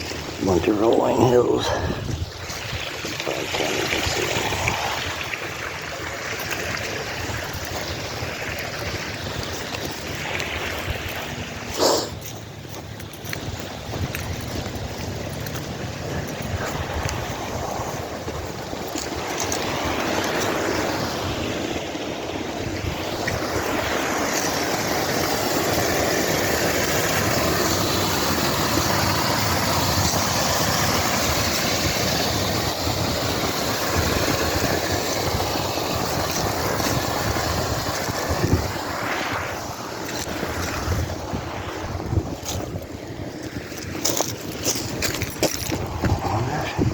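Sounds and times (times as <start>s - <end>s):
wind rushing over microphone: 0.0s - 5.8s, 15.8s - 46.9s
road rumble: 0.0s - 21.7s, 35.2s - 46.9s.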